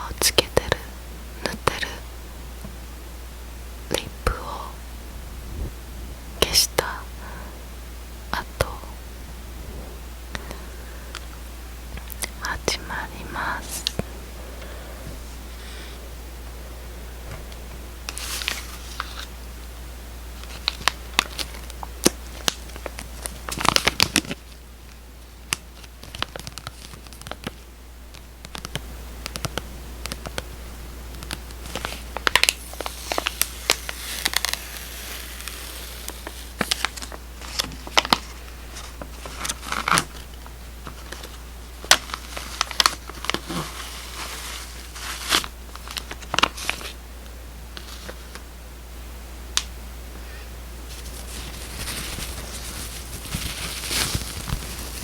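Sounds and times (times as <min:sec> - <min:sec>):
steady low hum: 0:00.0 - 0:55.0
plastic packet crinkling: 0:18.1 - 0:19.4, 0:20.4 - 0:24.6, 0:25.4 - 0:27.6, 0:31.1 - 0:40.3, 0:40.9 - 0:47.0, 0:50.9 - 0:55.0.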